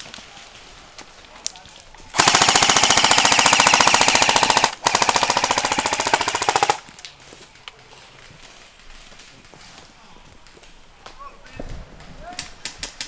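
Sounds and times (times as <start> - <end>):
airsoft gun automatic bursts: 2.1 - 6.9.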